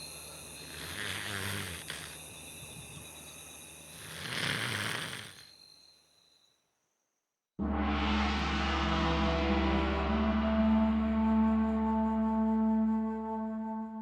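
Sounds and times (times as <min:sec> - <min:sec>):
man snoring: 0:00.6 - 0:02.2, 0:03.9 - 0:05.5.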